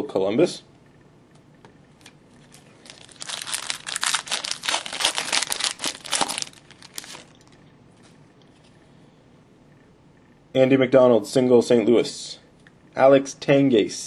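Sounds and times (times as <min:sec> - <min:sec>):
plastic wrapper tearing and crinkling: 0:02.4 - 0:07.4.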